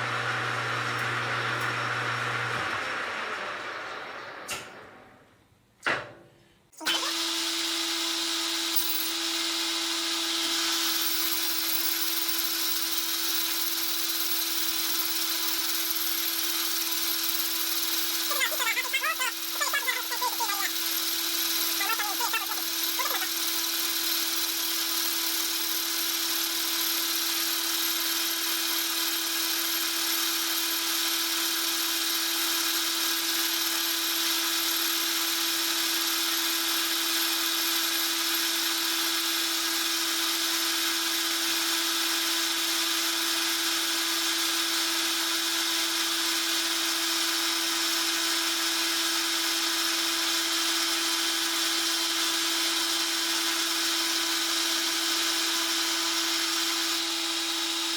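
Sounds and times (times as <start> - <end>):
metal lathe humming: 6.8 - 30.8, 56.2 - 57.9.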